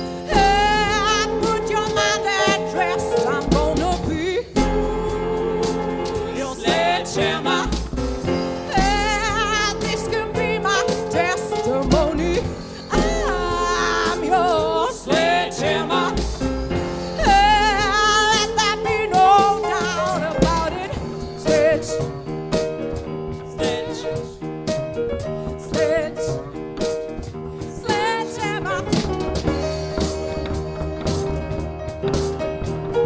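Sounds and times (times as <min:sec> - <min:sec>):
live band playing: 0:00.0 - 0:33.0
woman singing with vibrato: 0:00.1 - 0:08.0, 0:08.6 - 0:16.4, 0:17.2 - 0:22.3, 0:23.6 - 0:24.4, 0:25.6 - 0:26.6, 0:27.7 - 0:30.4.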